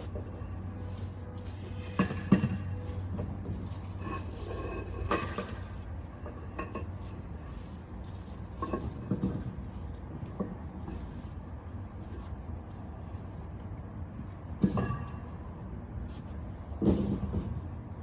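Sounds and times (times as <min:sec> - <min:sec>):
concrete pavers clinking: 0:00.0 - 0:12.4.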